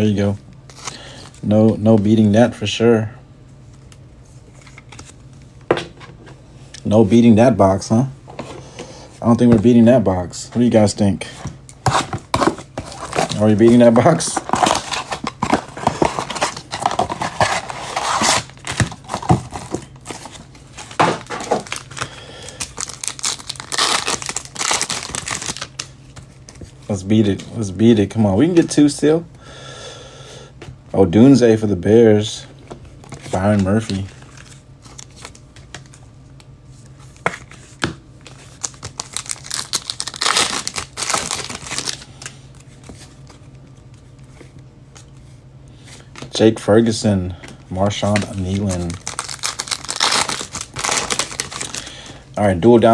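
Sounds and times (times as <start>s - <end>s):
packaging crinkling and tearing: 11.8s - 26.2s, 38.3s - 42.7s, 47.8s - 52.2s.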